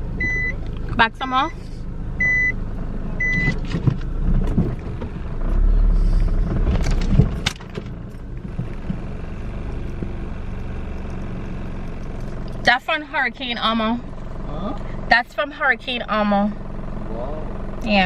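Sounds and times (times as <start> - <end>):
car engine idling: 0.0 - 18.0
low rumble: 0.0 - 18.0
high reversing beep: 0.2 - 0.6, 2.2 - 2.6, 3.2 - 3.6.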